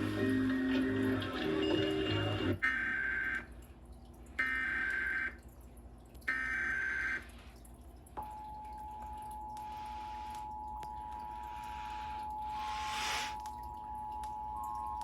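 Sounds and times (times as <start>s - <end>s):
harsh digital data tones: 11.2s - 15.0s.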